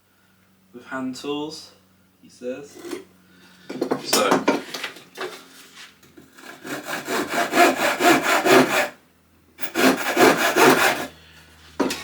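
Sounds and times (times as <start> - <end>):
hand saw cutting wood: 6.3 - 9.0, 9.6 - 11.2.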